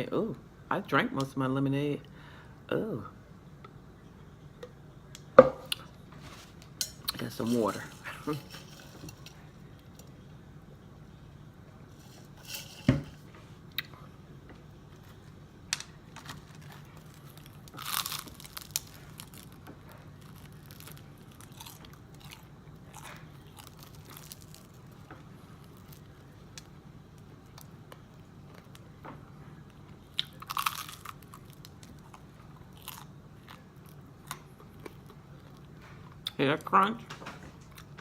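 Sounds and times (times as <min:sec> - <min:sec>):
low steady hum: 0:00.0 - 0:38.0
person crunching crispy chicken: 0:16.2 - 0:25.0, 0:30.1 - 0:35.6.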